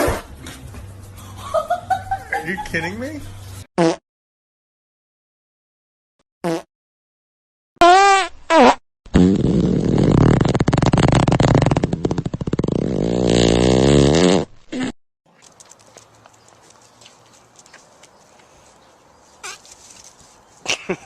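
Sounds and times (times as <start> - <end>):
farting: 3.8 - 4.0, 6.4 - 6.7, 7.8 - 15.0.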